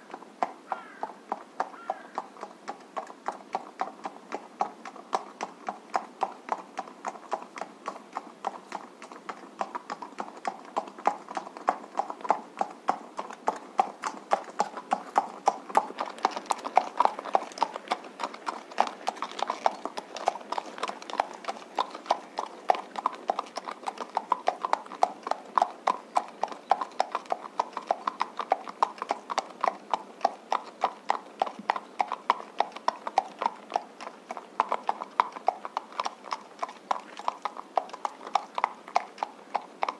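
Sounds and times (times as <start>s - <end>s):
horse hooves trotting: 0.0s - 39.9s.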